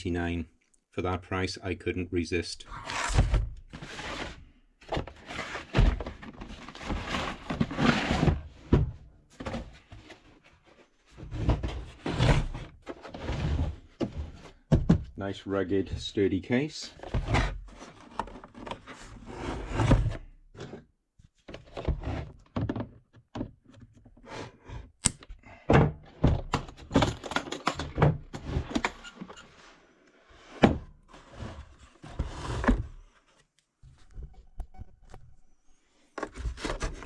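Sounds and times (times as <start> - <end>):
plastic case thunks and knocks: 14.0 - 15.2, 25.7 - 27.2.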